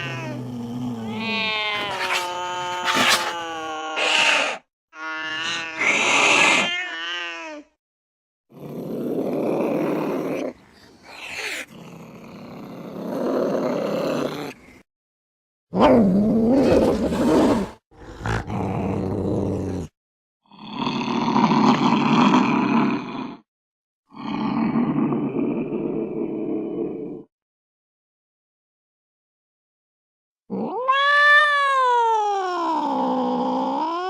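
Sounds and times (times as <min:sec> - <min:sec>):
cat growling and hissing: 0:00.0 - 0:07.8, 0:08.5 - 0:14.9, 0:15.7 - 0:23.4, 0:30.5 - 0:34.0
cat yowling: 0:01.1 - 0:07.7, 0:30.6 - 0:33.1.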